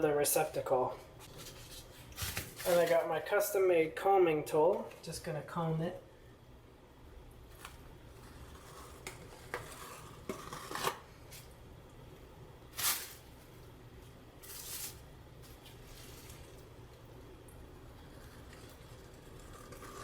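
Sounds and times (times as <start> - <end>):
comb scraping tile adhesive: 8.1 - 11.0, 18.0 - 20.0.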